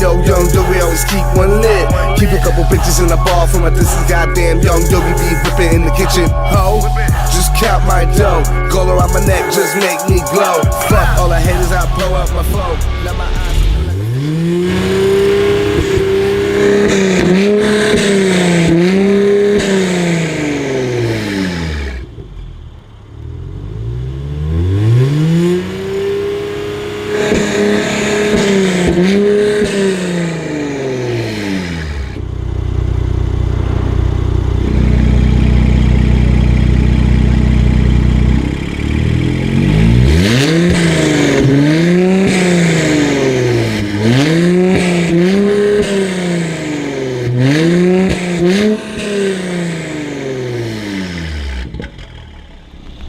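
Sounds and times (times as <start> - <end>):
steady low engine drone: 0.0 - 17.0, 30.1 - 47.4
car engine revving: 0.0 - 53.0.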